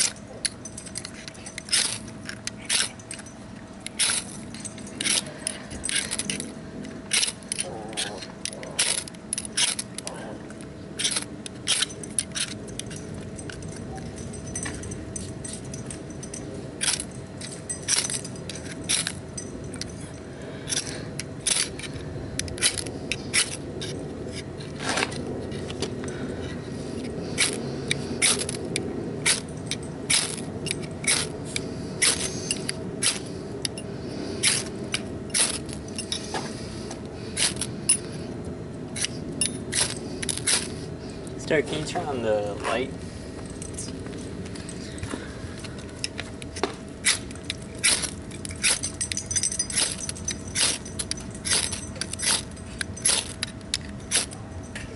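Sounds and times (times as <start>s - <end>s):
sharp clicks and short scrapes: 0.0s - 3.3s, 3.9s - 6.5s, 7.1s - 13.6s, 20.7s - 25.8s, 27.0s - 33.8s, 34.4s - 38.1s, 39.0s - 40.8s, 47.0s - 54.4s
faint steady hum: 0.0s - 54.9s.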